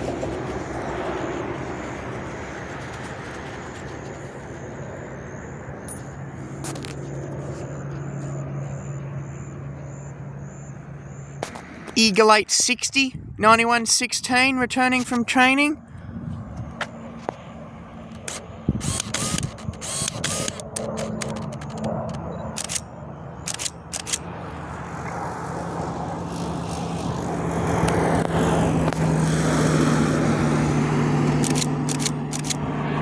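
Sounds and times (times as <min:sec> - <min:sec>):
propeller plane engine drone: 0:00.0 - 0:33.0
steady low hum: 0:00.0 - 0:33.0
sharp clicks: 0:18.1 - 0:24.3, 0:31.4 - 0:32.6.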